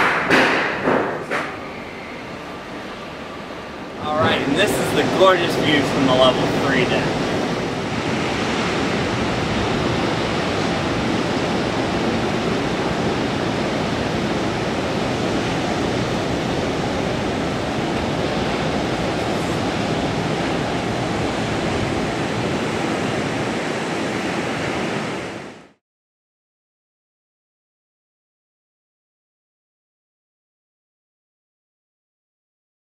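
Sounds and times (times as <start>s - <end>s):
wind: 0.0s - 25.8s
ocean surf: 1.3s - 25.8s.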